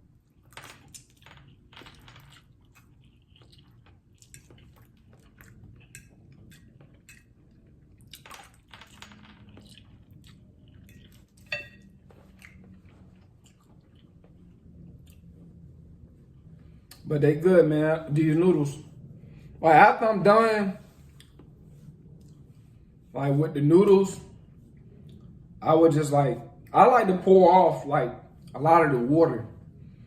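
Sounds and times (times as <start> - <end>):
person chewing noodles: 2.4 - 8.6, 9.6 - 11.5, 12.2 - 14.3.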